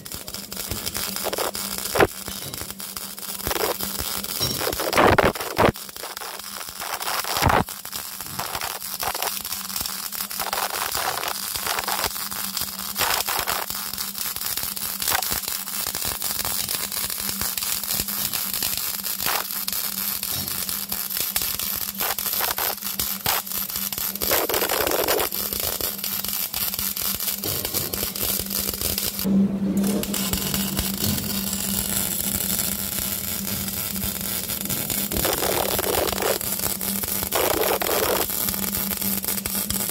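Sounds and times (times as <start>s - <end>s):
welding arc crackling: 0.0s - 39.9s
low hum: 27.2s - 36.9s.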